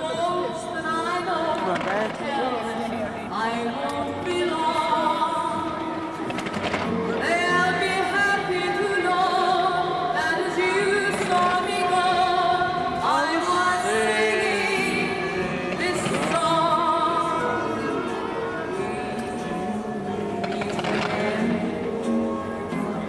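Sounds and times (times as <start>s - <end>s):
operatic solo singing: 7.1s - 23.0s.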